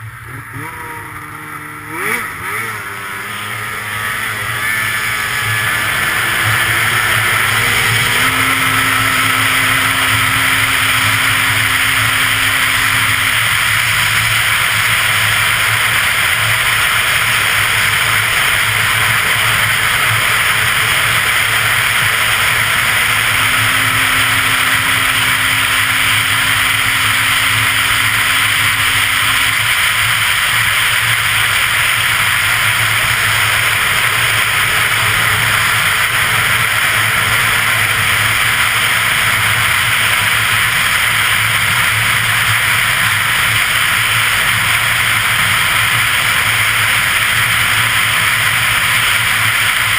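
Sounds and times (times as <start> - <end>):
loud rushing noise: 0.0 - 49.9
snowmobile engine accelerating: 0.0 - 49.9.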